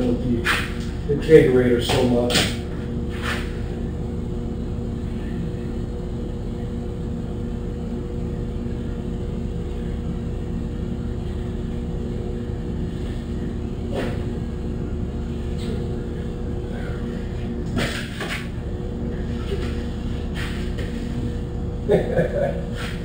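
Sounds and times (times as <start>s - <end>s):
motor drone: 0.0s - 23.0s.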